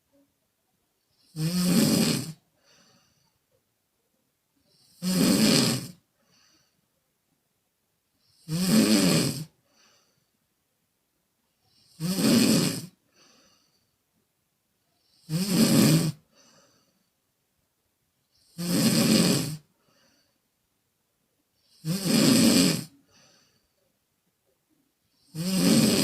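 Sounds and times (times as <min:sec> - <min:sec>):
woman snoring: 0:01.1 - 0:03.2, 0:04.7 - 0:06.5, 0:08.3 - 0:09.6, 0:11.7 - 0:13.7, 0:15.0 - 0:16.9, 0:18.4 - 0:20.3, 0:21.6 - 0:23.6, 0:25.2 - 0:26.0
faint puff of breath: 0:02.6 - 0:03.4, 0:23.0 - 0:23.8.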